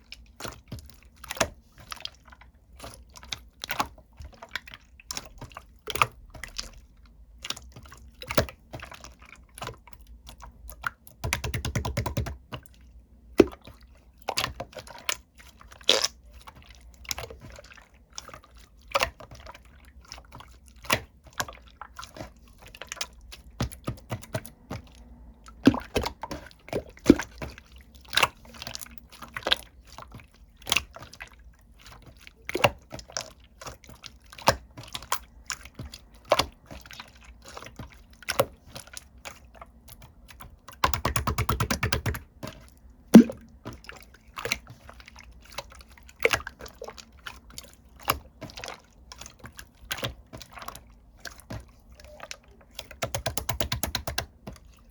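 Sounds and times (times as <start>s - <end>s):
slime squeezed wet clicks and pops: 40.8s - 42.3s, 43.2s - 43.7s.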